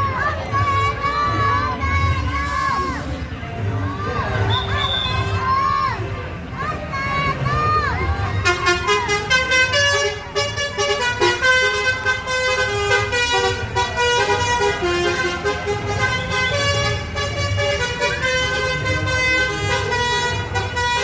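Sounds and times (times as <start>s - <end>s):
musical bus horn playing a tune: 8.4s - 21.0s.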